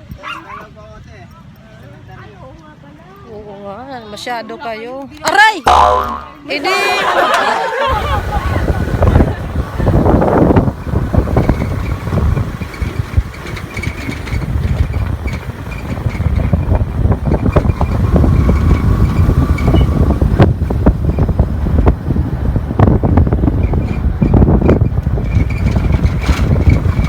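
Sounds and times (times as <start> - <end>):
wind buffeting microphone: 7.1 - 27.0.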